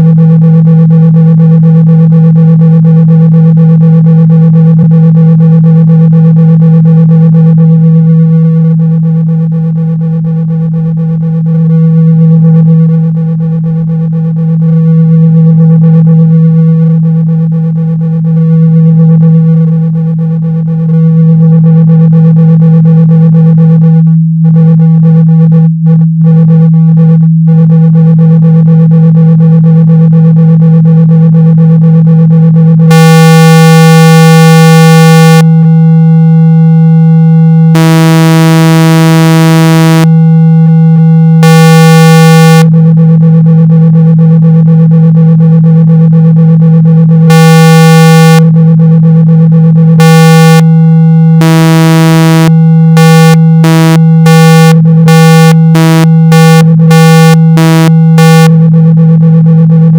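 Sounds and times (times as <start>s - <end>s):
steady low hum tone: 0.0s - 59.9s
buzzy higher tone pulses: 32.2s - 45.1s, 45.8s - 59.9s.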